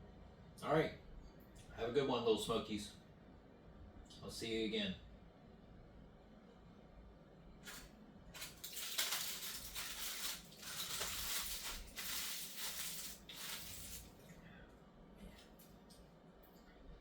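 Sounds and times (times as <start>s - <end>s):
paper wrapper crumpling: 8.4s - 14.1s.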